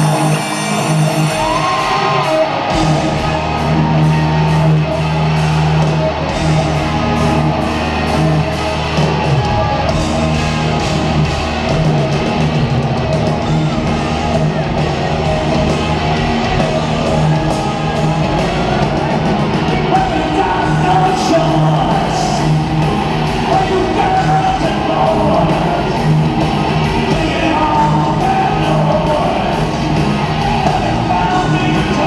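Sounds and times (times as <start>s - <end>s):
singing and shouted vocals: 0.0s - 11.0s, 13.6s - 32.0s
hard rock band playing: 0.0s - 32.0s.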